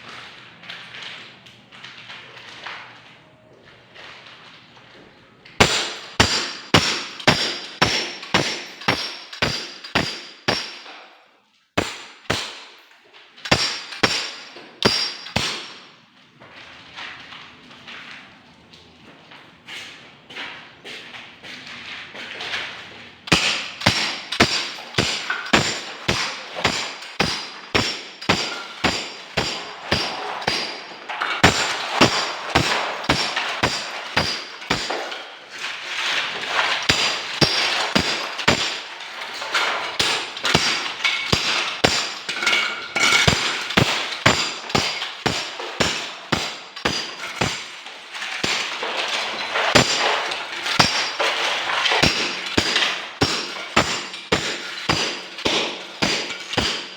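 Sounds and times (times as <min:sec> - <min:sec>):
hammer striking: 0:05.6 - 0:11.0, 0:11.8 - 0:12.8, 0:13.5 - 0:15.9, 0:23.3 - 0:35.2, 0:36.6 - 0:48.9, 0:49.6 - 0:56.9.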